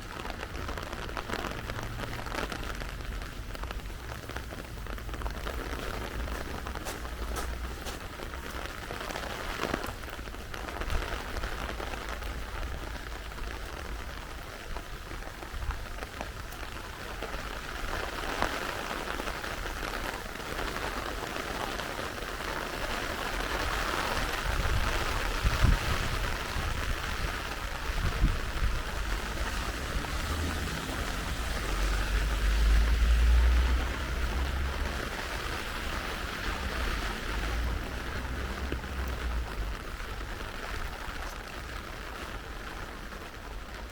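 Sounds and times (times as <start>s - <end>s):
steady rain falling: 0.0s - 43.9s
low rumbles: 0.2s - 9.2s, 25.4s - 42.4s.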